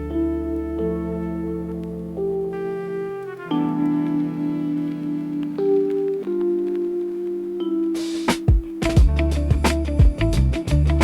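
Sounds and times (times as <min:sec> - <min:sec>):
sustained held notes: 0:00.0 - 0:10.3
low bass tone: 0:08.8 - 0:11.0.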